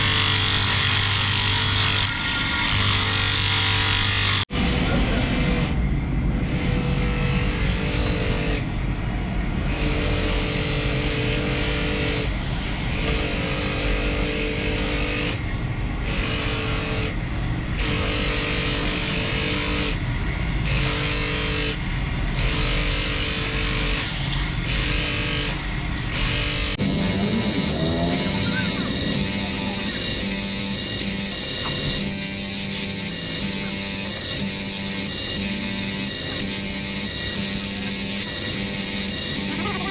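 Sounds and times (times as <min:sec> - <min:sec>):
power tool hissing: 0:26.7 - 0:39.9
steady hum: 0:26.8 - 0:39.9.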